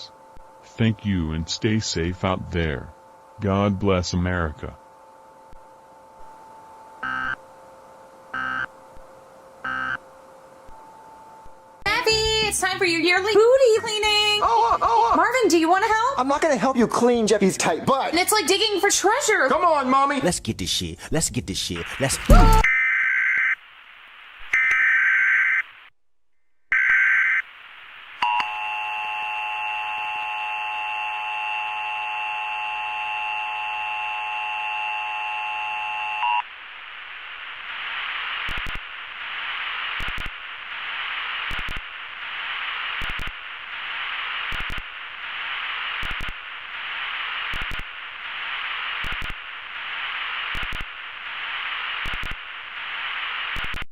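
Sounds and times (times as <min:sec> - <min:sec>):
hissing static: 0:21.5 - 0:22.7, 0:23.6 - 0:24.6, 0:27.0 - 0:28.2, 0:32.7 - 0:53.9
sharp clicks: 0:40.0 - 0:40.4, 0:41.5 - 0:41.9, 0:44.5 - 0:44.9, 0:46.0 - 0:46.4, 0:47.5 - 0:47.9, 0:49.0 - 0:49.4, 0:50.5 - 0:50.9, 0:52.0 - 0:52.4.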